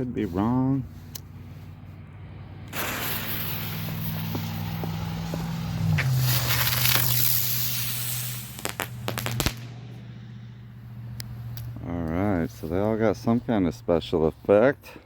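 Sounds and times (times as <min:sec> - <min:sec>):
firework pops and cracks: 0:02.7 - 0:10.0
flying spinner firework hissing: 0:02.7 - 0:10.4.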